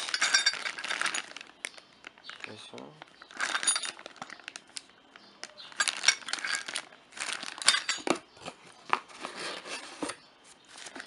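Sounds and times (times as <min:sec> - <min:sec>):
small clinks: 0:00.0 - 0:08.2
packaging rustling and crinkling: 0:00.0 - 0:11.0.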